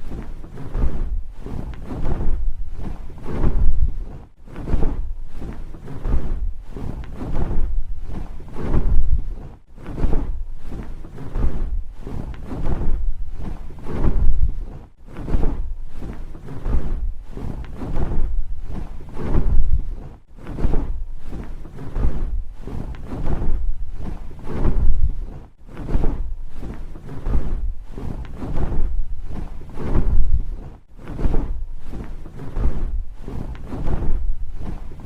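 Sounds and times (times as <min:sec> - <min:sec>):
large wings flapping: 0:00.0 - 0:35.0.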